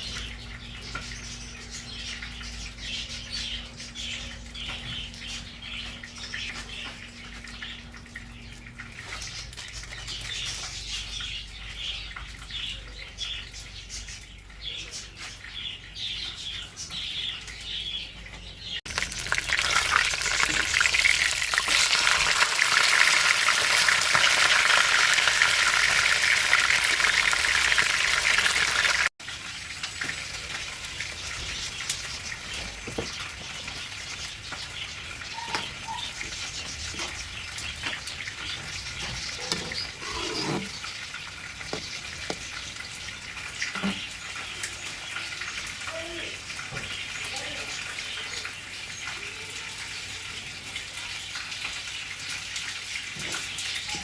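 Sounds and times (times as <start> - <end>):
food sizzling in hot oil: 18.9 - 32.5.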